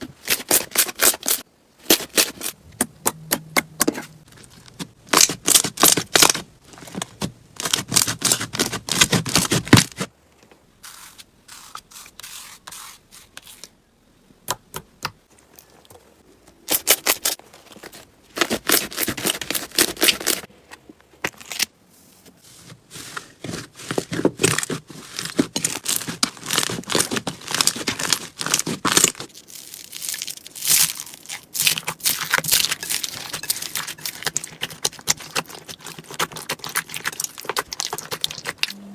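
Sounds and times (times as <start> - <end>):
slime crackling and popping: 25.6 - 38.7.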